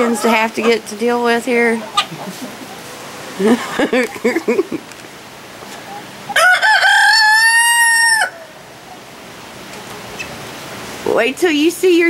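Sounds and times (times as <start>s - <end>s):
chickens clucking: 0.0s - 8.1s, 8.8s - 10.4s
rooster crowing: 6.3s - 8.6s.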